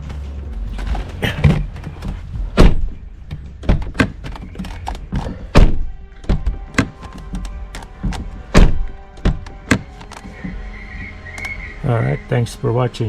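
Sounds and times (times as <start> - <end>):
heavy door thunks: 0.9 - 10.6
door latch clicks: 1.5 - 10.6.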